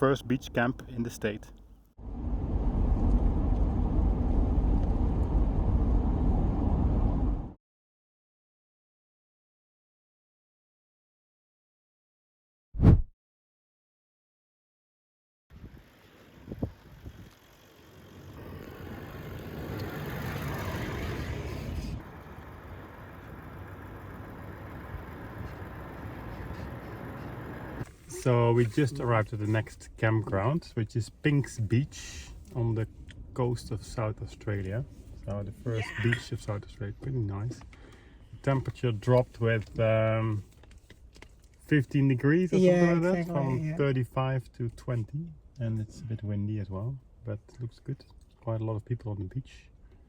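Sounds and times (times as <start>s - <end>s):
vehicle engine and road noise: 0.0s - 7.6s, 15.5s - 49.8s
vehicle driving on road: 2.0s - 7.6s, 15.6s - 28.0s.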